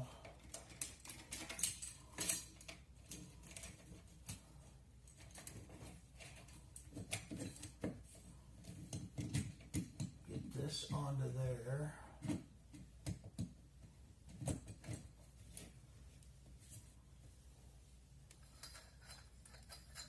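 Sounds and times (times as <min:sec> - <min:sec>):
metal parts clicking and clinking: 0:00.2 - 0:04.4, 0:18.3 - 0:20.0.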